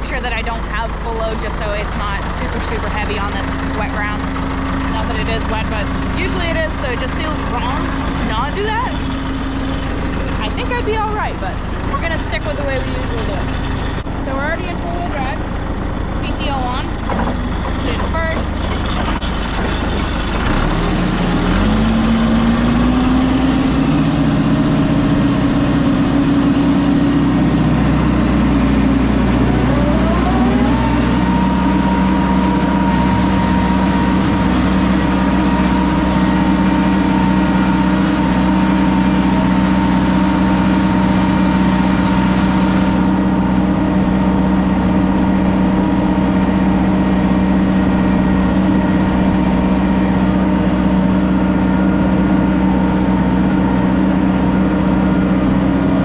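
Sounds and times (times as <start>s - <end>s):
tractor engine running under load: 0.0s - 56.0s
spreader drive whine: 16.9s - 56.0s.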